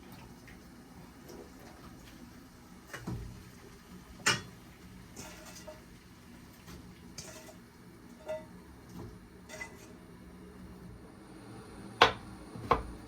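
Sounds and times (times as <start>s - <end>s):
dishes and utensils clinking: 4.2s - 4.6s, 5.2s - 5.9s, 7.2s - 10.0s.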